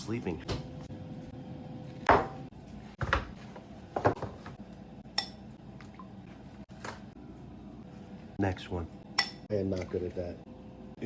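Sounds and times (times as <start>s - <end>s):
dishes knocking: 2.1s - 3.4s, 4.0s - 4.5s.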